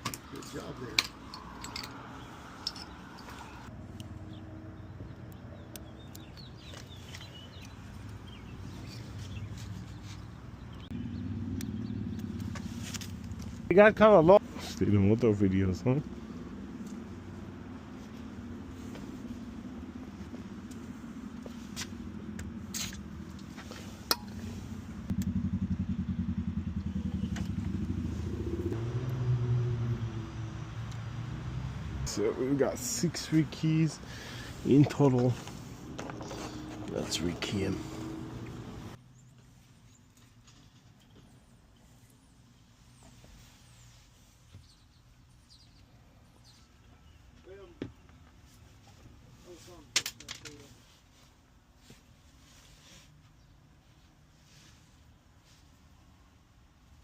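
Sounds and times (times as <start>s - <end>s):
bird chirps: 2.0s - 12.6s, 41.1s - 48.2s
engine running with low pulse: 10.7s - 13.7s, 16.0s - 32.0s.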